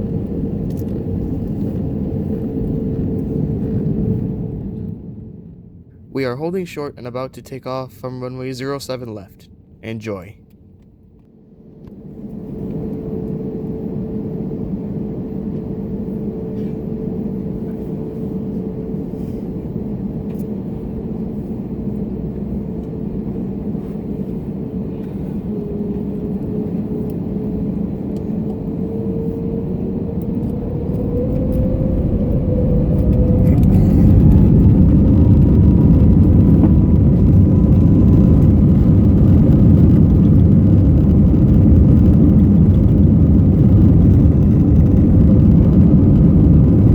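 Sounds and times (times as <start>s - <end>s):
jet engines whining: 0.0s - 10.3s, 11.4s - 46.9s
jet engines spooling up: 11.7s - 46.9s.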